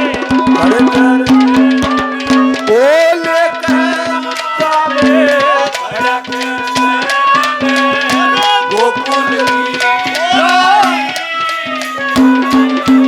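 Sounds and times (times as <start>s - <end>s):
hand drum strokes: 0.0s - 13.0s
held melodic note: 0.0s - 13.0s.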